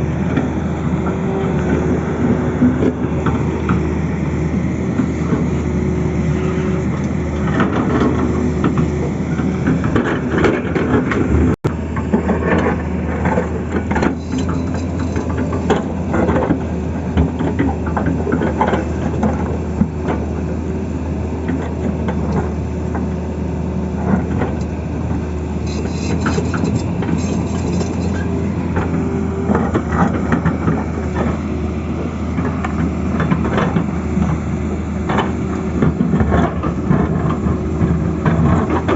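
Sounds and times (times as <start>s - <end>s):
diesel engine running: 0.0s - 38.9s
knocks and scrapes: 25.6s - 31.4s.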